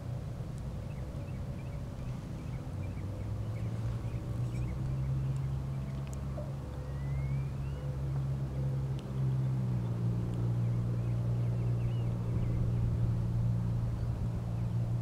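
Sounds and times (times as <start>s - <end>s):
faint bird chirps: 0.8s - 8.0s.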